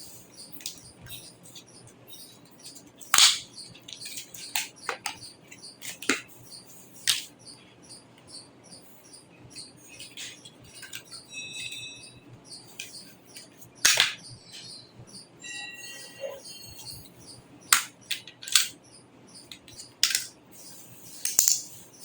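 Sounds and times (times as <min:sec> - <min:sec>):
metallic ring: 0:11.2 - 0:12.6, 0:15.4 - 0:17.1.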